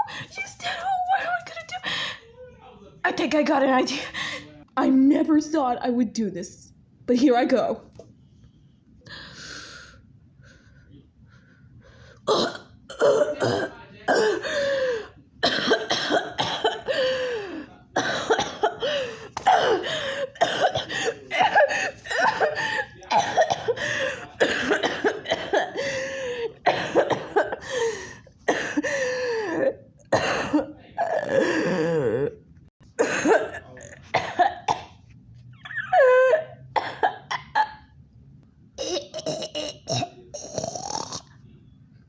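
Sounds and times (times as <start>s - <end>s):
girl coughing: 12.3s - 14.6s, 15.4s - 17.1s, 18.0s - 26.0s, 26.6s - 27.7s, 28.5s - 31.8s, 33.0s - 35.0s, 38.8s - 41.2s.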